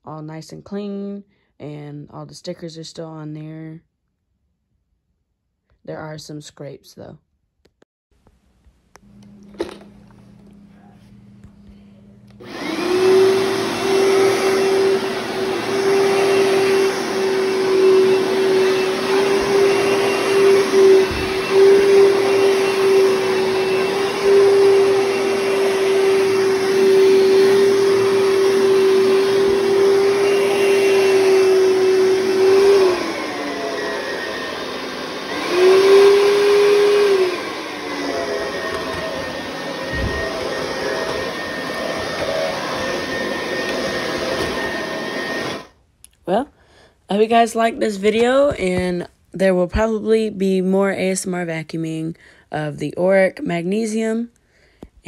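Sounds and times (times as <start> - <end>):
vacuum cleaner running: 9.0 - 46.4.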